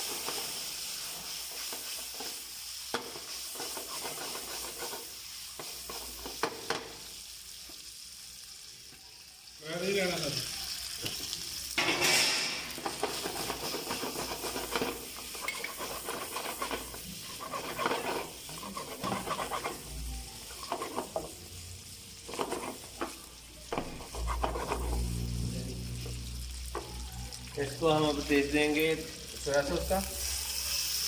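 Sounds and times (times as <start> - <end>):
chicken sizzling in hot oil: 0.0 - 31.0
spoon scraping a pan: 1.3 - 6.8, 11.8 - 21.4, 22.2 - 25.1.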